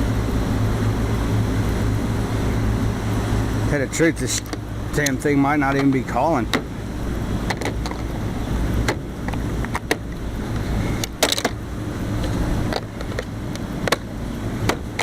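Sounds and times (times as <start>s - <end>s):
air-conditioning hum: 0.0s - 15.0s
sharp clicks and knocks: 4.4s - 6.8s, 7.4s - 8.1s, 8.8s - 11.6s, 12.2s - 15.0s.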